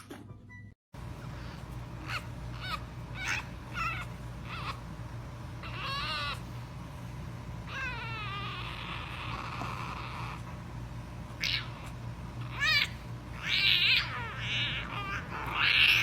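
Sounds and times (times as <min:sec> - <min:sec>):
young animal crying: 0:02.0 - 0:05.0, 0:05.6 - 0:06.7, 0:07.6 - 0:10.6, 0:11.3 - 0:16.0.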